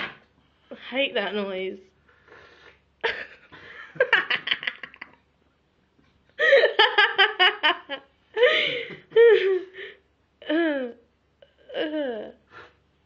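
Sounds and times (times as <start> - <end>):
person laughing: 6.4 - 9.9.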